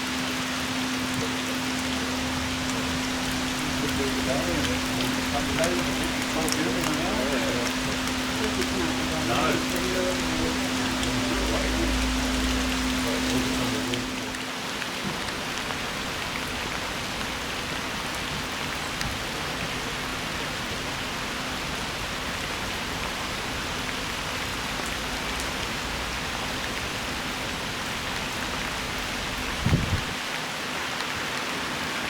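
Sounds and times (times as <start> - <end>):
steady rain: 0.0 - 32.0.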